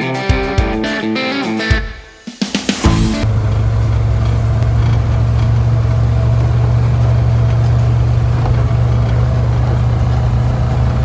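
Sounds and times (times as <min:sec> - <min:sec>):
tractor engine droning: 0:02.9 - 0:11.0.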